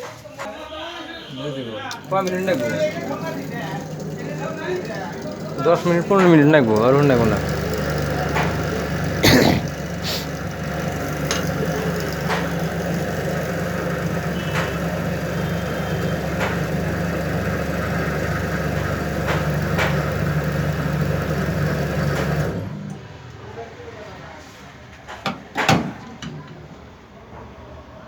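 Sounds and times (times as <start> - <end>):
low motor hum: 2.0 - 23.0.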